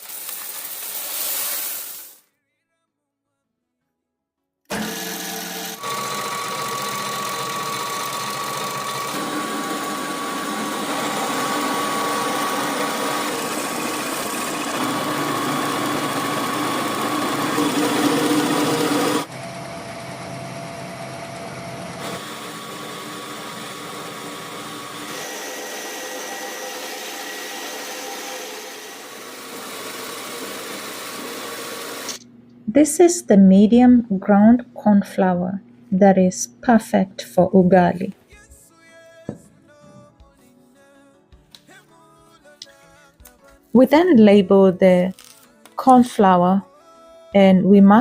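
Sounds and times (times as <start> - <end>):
stone mill whirring: 4.7 - 32.3.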